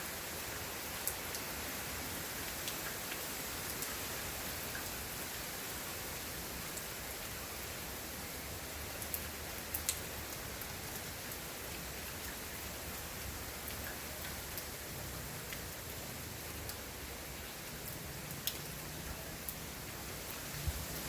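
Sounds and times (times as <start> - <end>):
steady rain hiss: 0.0 - 21.0
rain drop ticks: 2.6 - 3.9, 4.7 - 5.0, 9.0 - 10.1, 13.6 - 14.7, 17.8 - 19.6.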